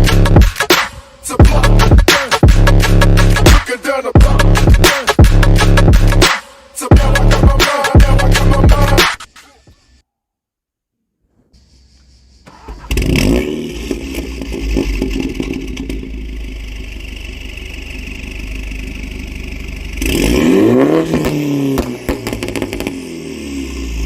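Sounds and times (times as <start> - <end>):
car engine starting and idling: 11.6 - 24.0
car engine revving: 12.0 - 24.0.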